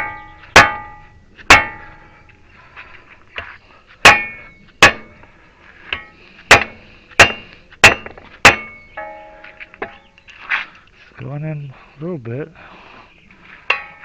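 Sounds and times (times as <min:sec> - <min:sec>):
hammer striking metal: 0:00.0 - 0:02.0, 0:04.0 - 0:05.2, 0:05.9 - 0:10.0, 0:13.7 - 0:14.0.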